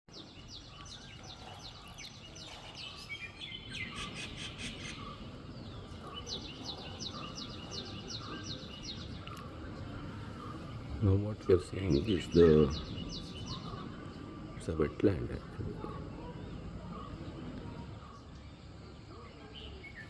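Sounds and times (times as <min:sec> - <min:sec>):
birds calling: 0:00.1 - 0:20.0
low background rumble: 0:05.0 - 0:18.2.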